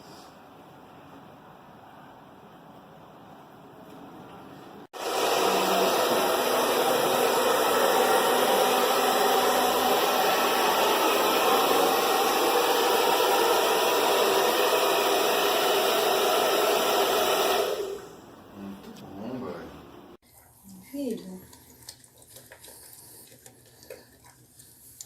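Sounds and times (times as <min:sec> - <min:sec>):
hair dryer blowing: 0:05.0 - 0:18.2.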